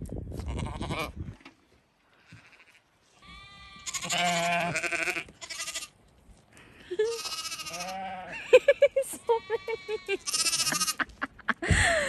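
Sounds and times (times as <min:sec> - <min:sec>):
sheep bleating: 0:02.2 - 0:05.9, 0:07.0 - 0:08.4, 0:09.2 - 0:11.0.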